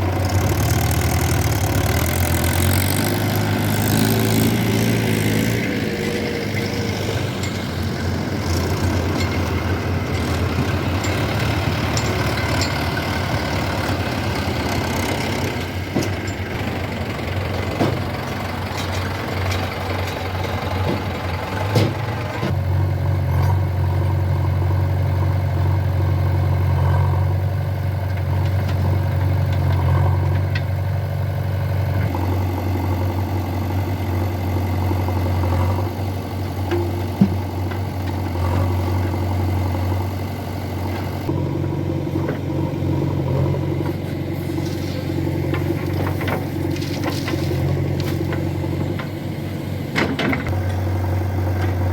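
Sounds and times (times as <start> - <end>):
diesel engine running: 0.0 - 51.9.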